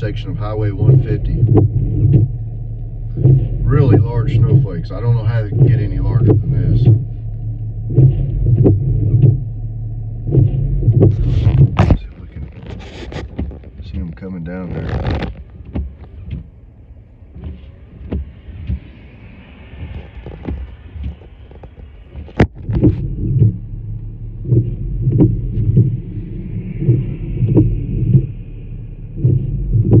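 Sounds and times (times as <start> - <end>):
vehicle road rumble: 0.0 - 30.0
scattered knocks: 0.8 - 2.4, 7.9 - 9.4, 10.3 - 14.0, 20.4 - 23.6, 24.5 - 26.0.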